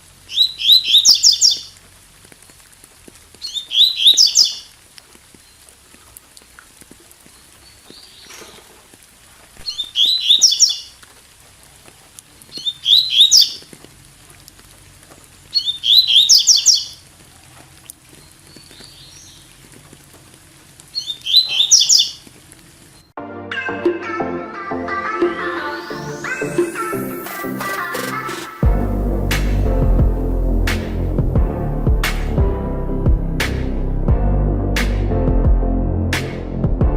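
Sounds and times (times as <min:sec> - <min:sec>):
faint rain hiss: 0:00.0 - 0:23.2, 0:25.6 - 0:31.2
bird singing high rapid notes: 0:00.3 - 0:01.7, 0:03.4 - 0:04.6, 0:09.6 - 0:10.9, 0:12.6 - 0:13.6, 0:15.6 - 0:17.0, 0:21.0 - 0:22.2
electronic music: 0:23.2 - 0:36.9.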